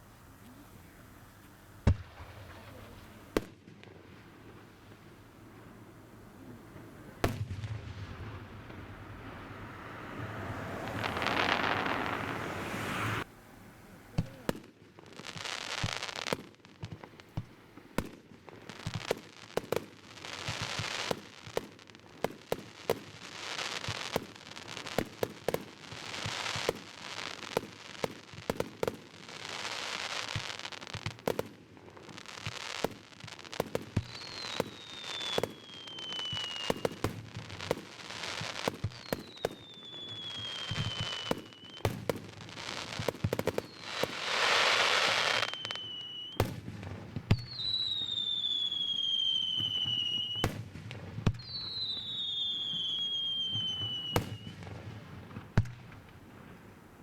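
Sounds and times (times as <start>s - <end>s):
fireworks bangs: 0.0s - 57.0s
fireworks crackling hiss: 0.0s - 57.0s
falling whistle: 34.1s - 37.0s, 39.0s - 41.9s, 43.6s - 46.4s, 47.4s - 50.5s, 51.4s - 54.6s.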